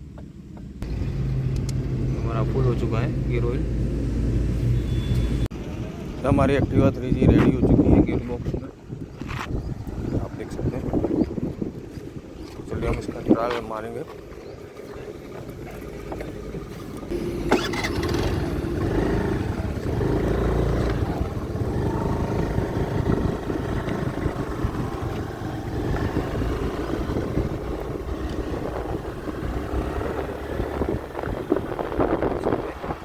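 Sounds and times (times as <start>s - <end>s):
scooter engine running: 17.1s - 33.0s.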